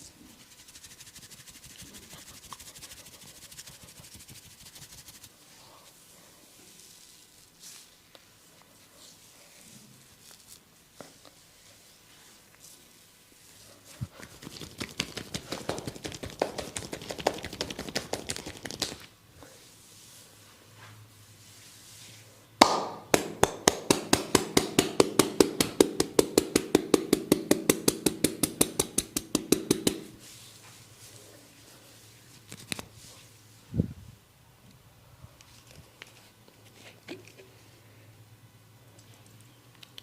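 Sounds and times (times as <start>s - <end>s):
hands slapping in massage: 14.1s - 19.1s, 22.6s - 30.2s.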